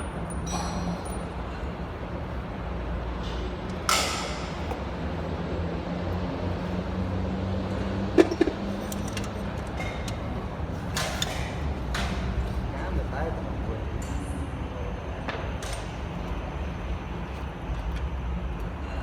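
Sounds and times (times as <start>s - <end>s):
low mechanical hum: 0.0s - 19.0s.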